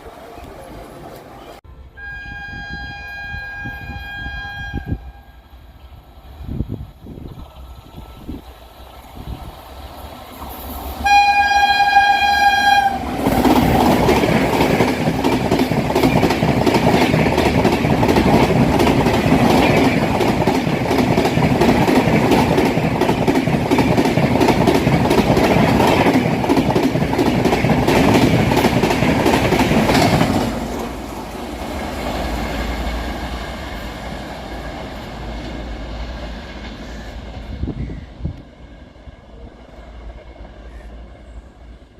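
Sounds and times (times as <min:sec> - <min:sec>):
locomotive horn: 0:01.8 - 0:05.5, 0:11.0 - 0:13.2
train rushing and clattering past: 0:05.5 - 0:41.9.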